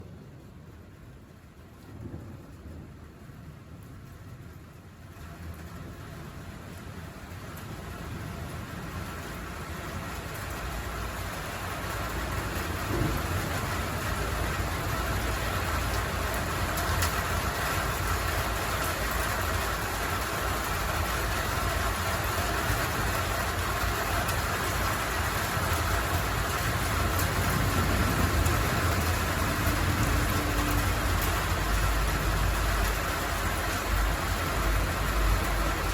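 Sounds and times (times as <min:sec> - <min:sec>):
rain and wind rushing: 0:00.0 - 0:35.9
deep thunder rumble: 0:01.9 - 0:04.6, 0:12.1 - 0:18.3, 0:22.7 - 0:35.9.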